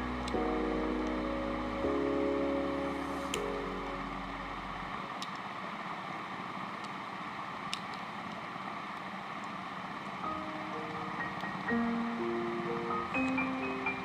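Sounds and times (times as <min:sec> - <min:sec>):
background music: 0:00.0 - 0:05.0, 0:10.3 - 0:14.0
steady background hiss: 0:00.0 - 0:14.0.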